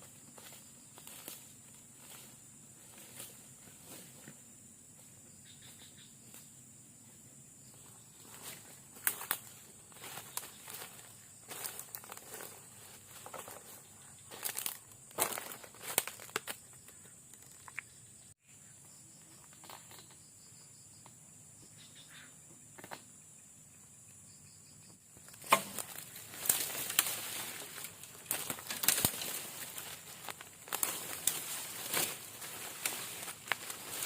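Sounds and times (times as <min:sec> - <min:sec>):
rustling and crinkling handling: 0:25.4 - 0:34.0.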